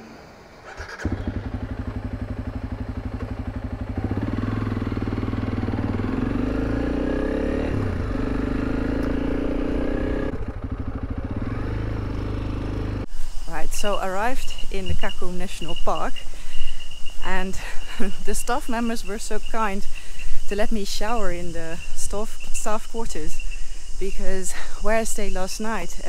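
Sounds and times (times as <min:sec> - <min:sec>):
motorcycle engine running: 0:00.7 - 0:13.1.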